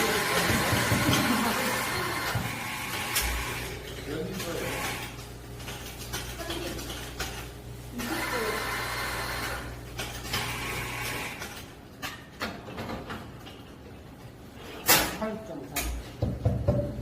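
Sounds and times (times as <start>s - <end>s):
coffee machine motor humming: 0.0s - 11.8s.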